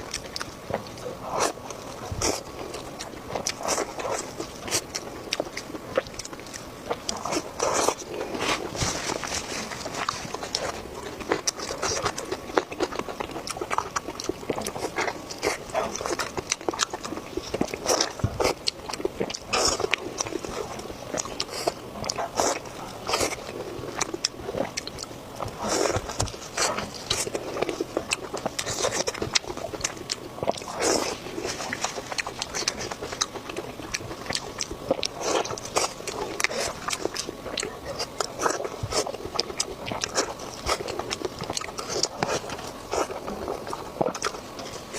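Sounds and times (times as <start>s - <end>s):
person chewing food: 0.0s - 44.9s.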